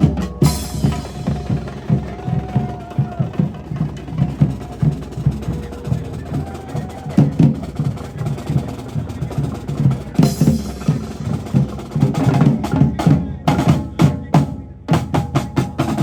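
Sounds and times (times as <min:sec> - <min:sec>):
drum troupe playing fast beat: 0:00.0 - 0:16.0.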